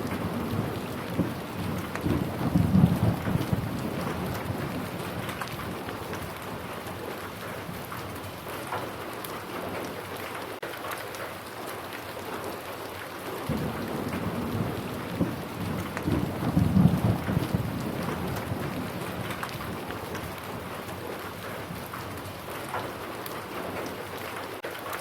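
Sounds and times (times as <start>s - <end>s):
thunder rumbling: 0.0s - 8.8s, 13.5s - 24.2s
rain drops pattering: 0.0s - 25.0s
steady rain falling: 0.0s - 25.0s.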